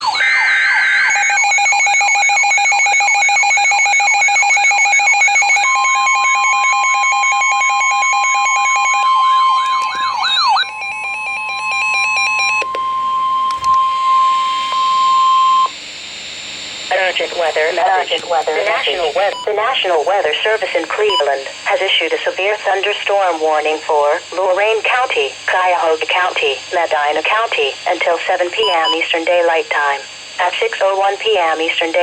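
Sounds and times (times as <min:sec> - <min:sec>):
siren warbling: 0:00.0 - 0:15.7
clicks: 0:12.6 - 0:14.0, 0:18.0 - 0:19.5.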